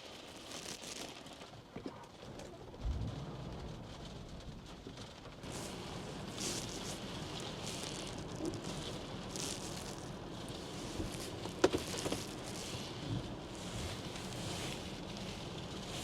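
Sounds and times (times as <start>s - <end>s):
low rumble: 2.5s - 16.0s
rain hiss: 2.7s - 16.0s
wind buffeting microphone: 2.8s - 4.6s.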